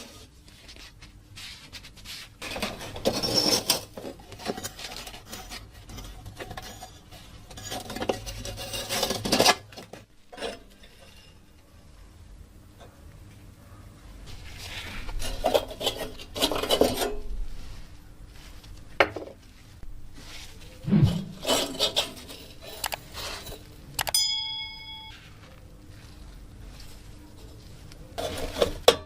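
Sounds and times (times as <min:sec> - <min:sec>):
lamp parts clinking and scraping: 0:02.4 - 0:11.4, 0:21.4 - 0:25.2
metal part ringing: 0:24.0 - 0:25.2.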